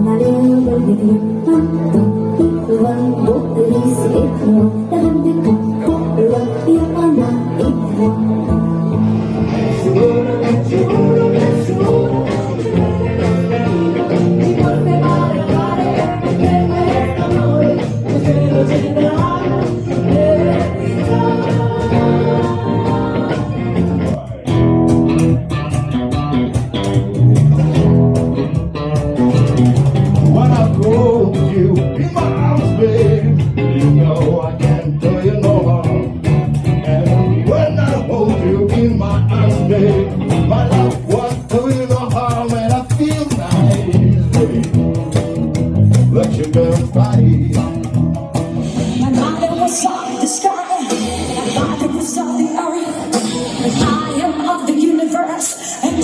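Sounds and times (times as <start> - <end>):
person singing: 0.0 - 24.6, 30.2 - 36.2, 45.9 - 48.0, 48.6 - 56.0
live rock band playing: 0.0 - 56.0.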